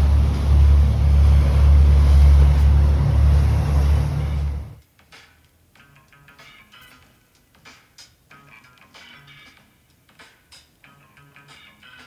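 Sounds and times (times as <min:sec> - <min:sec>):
boat engine droning: 0:00.0 - 0:04.8
wind and water rushing: 0:00.0 - 0:04.8.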